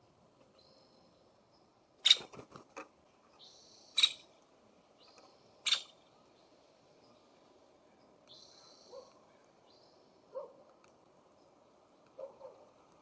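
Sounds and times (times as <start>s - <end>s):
faint high bird chirps: 0.5s - 2.3s, 3.3s - 4.3s, 5.0s - 7.3s, 7.9s - 10.5s
sharp bird calls: 2.0s - 2.4s, 3.4s - 4.4s, 5.0s - 6.4s.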